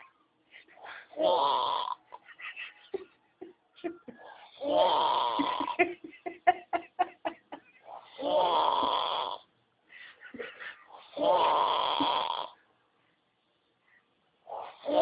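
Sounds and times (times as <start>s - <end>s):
man snoring loudly: 1.2s - 2.0s, 4.5s - 5.8s, 8.1s - 9.4s, 11.1s - 12.6s, 14.5s - 15.0s.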